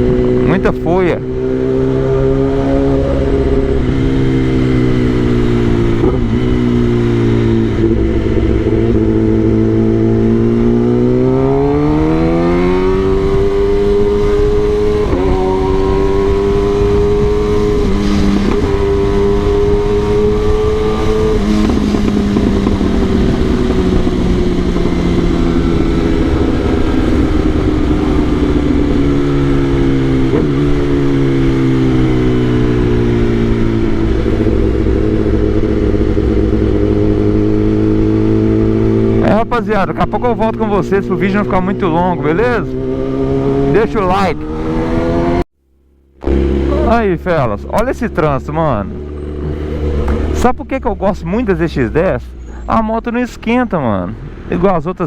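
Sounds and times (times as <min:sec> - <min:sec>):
motorcycle engine running: 0:00.0 - 0:52.6
wind noise: 0:01.2 - 0:40.6, 0:41.3 - 0:45.4.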